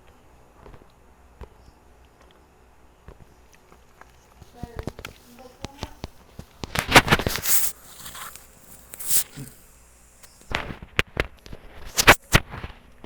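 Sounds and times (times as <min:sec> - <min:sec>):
scuffing rustles: 0:03.8 - 0:10.5
quick clicks: 0:04.8 - 0:10.5.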